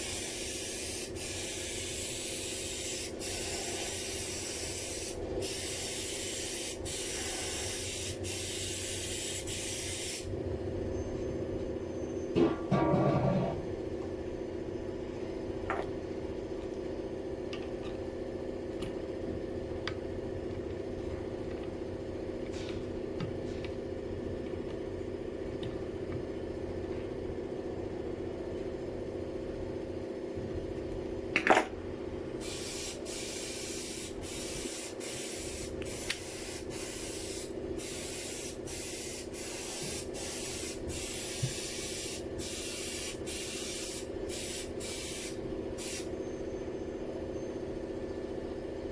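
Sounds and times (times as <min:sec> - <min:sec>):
paint sprayer humming: 0:00.0 - 0:10.3, 0:32.4 - 0:46.1
spray gun hissing bursts: 0:00.0 - 0:10.3, 0:32.4 - 0:46.1.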